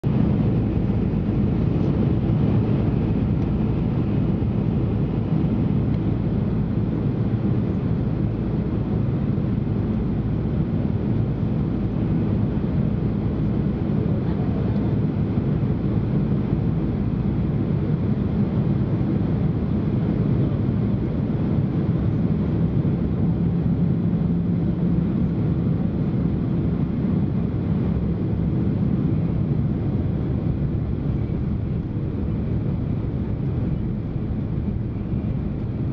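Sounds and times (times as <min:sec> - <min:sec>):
airliner cabin rumble: 0:00.0 - 0:35.9
faint steady hum: 0:22.1 - 0:35.9.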